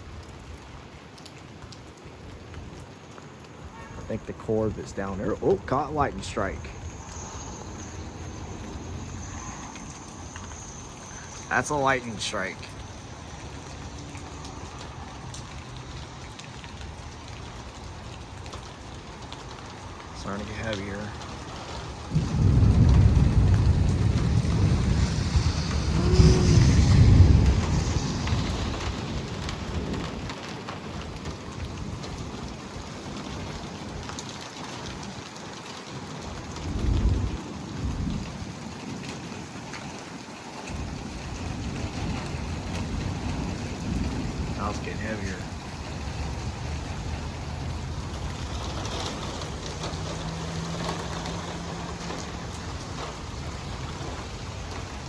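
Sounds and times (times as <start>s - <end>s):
steady rain falling: 0.0s - 55.0s
low rumble: 5.5s - 11.8s, 22.0s - 30.2s.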